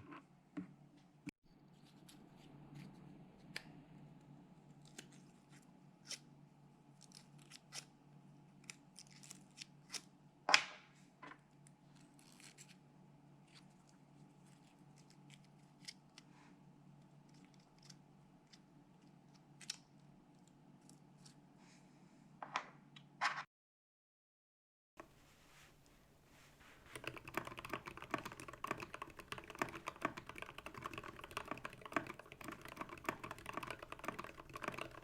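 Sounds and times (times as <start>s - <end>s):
paper scraping on keycaps: 26.6s - 35.0s
small keyboard clicks: 26.8s - 35.0s.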